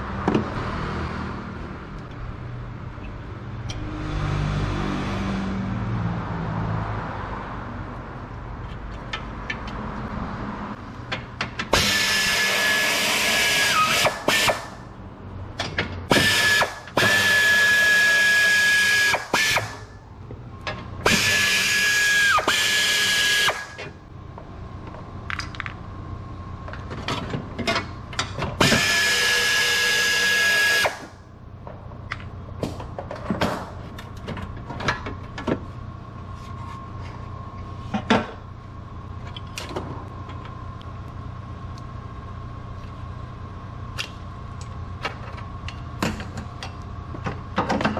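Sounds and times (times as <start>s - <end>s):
power drill whining: 28.6s - 31.1s.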